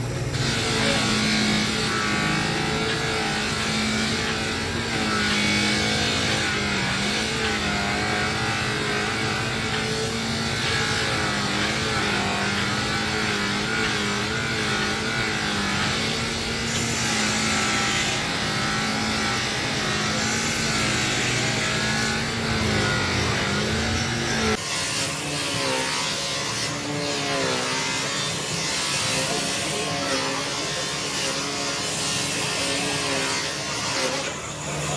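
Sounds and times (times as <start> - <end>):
motor humming: 0.0 - 24.6.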